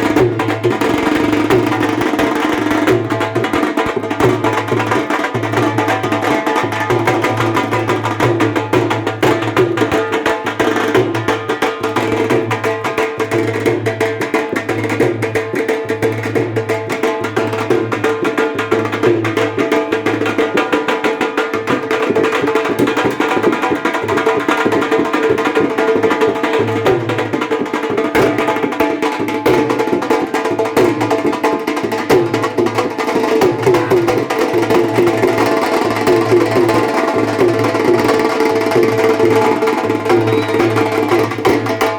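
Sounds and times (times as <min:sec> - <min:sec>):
repeating drum beat: 0:00.0 - 0:41.9.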